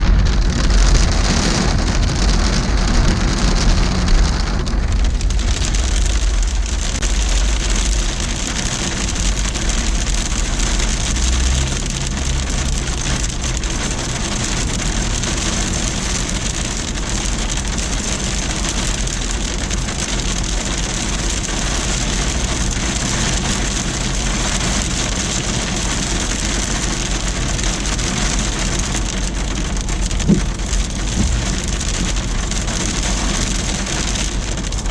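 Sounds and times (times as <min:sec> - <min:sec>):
low rumble: 0:00.0 - 0:16.4, 0:28.6 - 0:34.9
heavy rain and sleet falling: 0:00.0 - 0:34.9.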